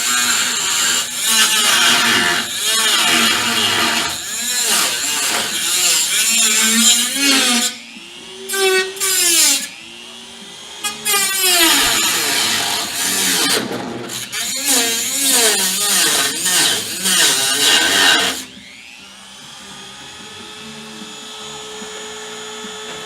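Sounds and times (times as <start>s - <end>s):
rotary tool cutting sheet metal: 0.0s - 9.8s, 10.8s - 18.7s.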